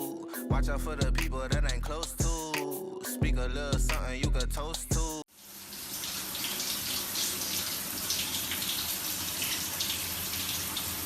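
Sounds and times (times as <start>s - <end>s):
tap water splashing into sink: 5.7s - 11.0s.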